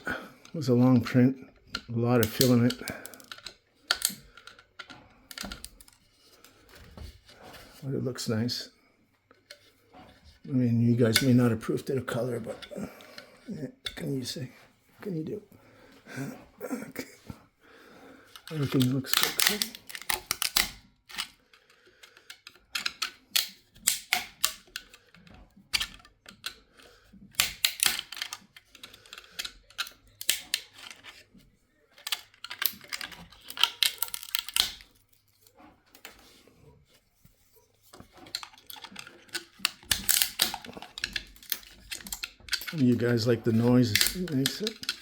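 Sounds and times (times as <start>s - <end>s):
plastic support material snapping: 18.4s - 21.4s, 32.0s - 36.2s, 38.0s - 45.0s.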